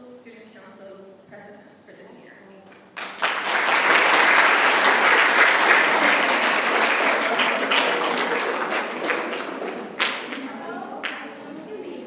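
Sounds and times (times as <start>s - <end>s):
audience applauding in a hall: 2.8s - 11.5s.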